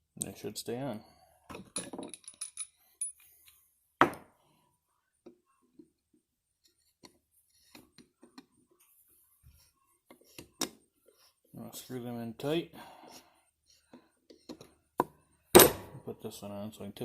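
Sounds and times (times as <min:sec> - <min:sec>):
small metal parts clinking: 0:01.5 - 0:03.5.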